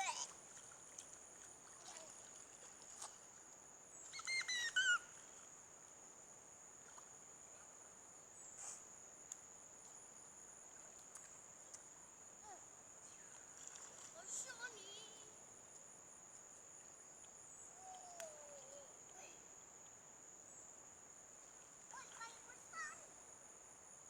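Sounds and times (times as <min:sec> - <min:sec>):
insect chorus: 0:00.0 - 0:24.0.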